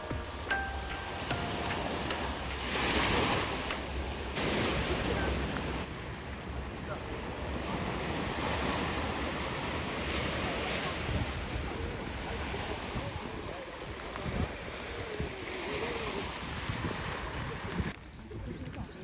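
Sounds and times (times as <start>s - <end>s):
sea waves washing in: 0.0s - 17.9s
wind buffeting microphone: 1.9s - 19.0s.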